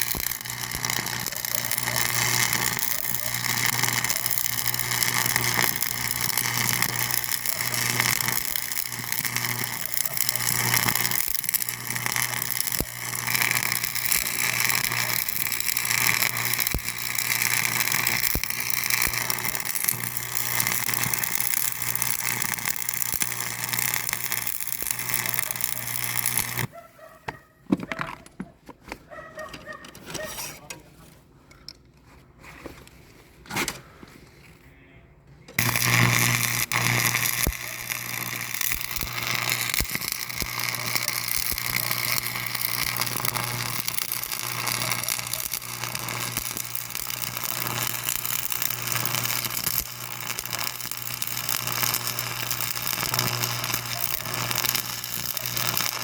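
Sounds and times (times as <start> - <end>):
machine humming: 35.6 - 56.0.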